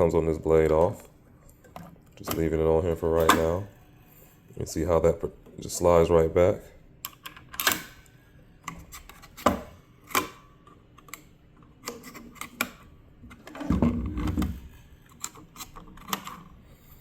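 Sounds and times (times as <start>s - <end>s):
clicks of plastic and metal parts: 14.2s - 16.5s.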